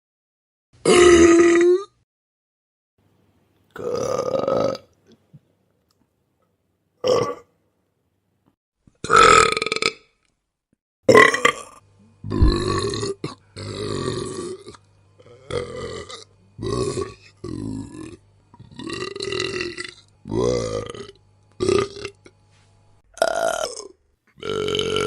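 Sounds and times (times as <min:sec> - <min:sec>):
person burping: 0:00.8 - 0:02.0, 0:03.8 - 0:04.9, 0:07.0 - 0:07.5, 0:09.0 - 0:10.1, 0:11.1 - 0:22.4, 0:23.1 - 0:25.0.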